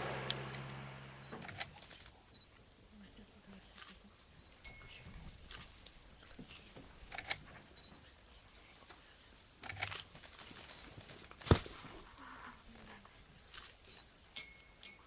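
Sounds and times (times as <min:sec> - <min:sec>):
sharp cracks and crunches: 0:09.6 - 0:12.2.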